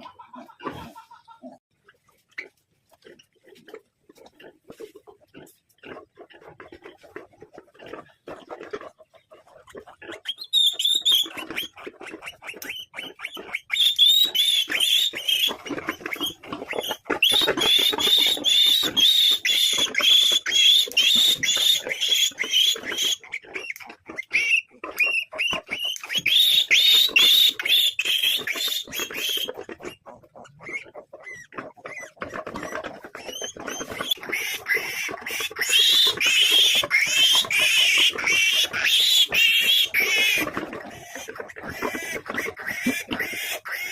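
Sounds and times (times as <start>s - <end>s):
piglet squealing: 9.4s - 43.9s.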